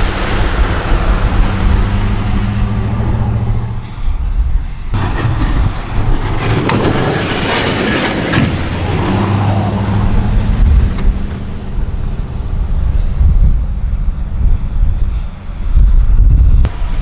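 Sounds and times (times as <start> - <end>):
snowplow truck engine running: 0.0 - 17.0
loud rushing scraping noise: 4.9 - 12.5.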